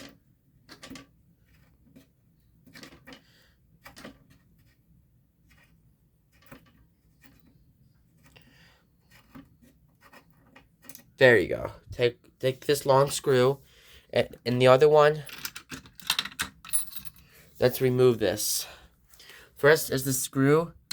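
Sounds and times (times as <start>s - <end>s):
screws and parts tapping: 0.0s - 3.2s, 15.2s - 17.3s
hardware clicks and knocks: 15.2s - 17.2s.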